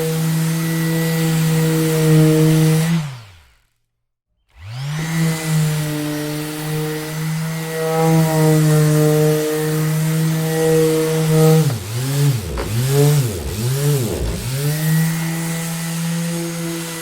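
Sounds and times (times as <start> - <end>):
orbital sander motor hum: 4.6 - 17.0.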